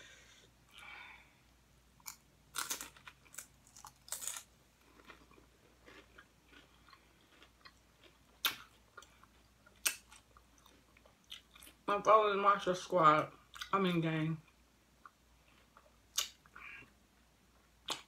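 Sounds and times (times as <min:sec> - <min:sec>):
crunchy chips chewing: 0:02.0 - 0:11.8.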